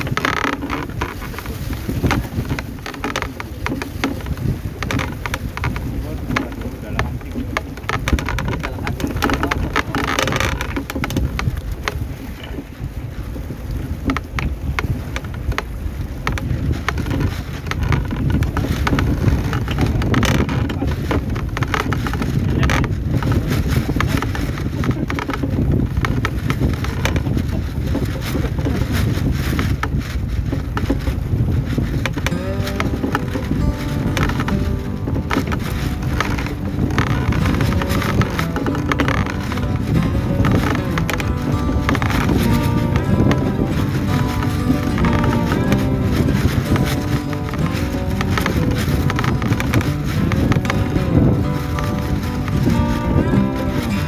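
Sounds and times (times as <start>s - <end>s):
sea: 0.0s - 54.0s
sharp crackles and clicks: 0.0s - 54.0s
wind: 0.0s - 54.0s.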